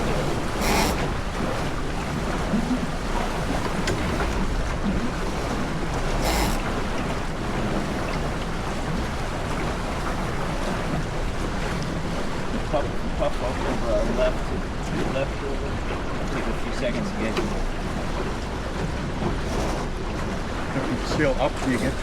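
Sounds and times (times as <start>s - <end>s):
hissing splashes: 0.0s - 9.3s
water rushing along hull: 0.0s - 22.0s.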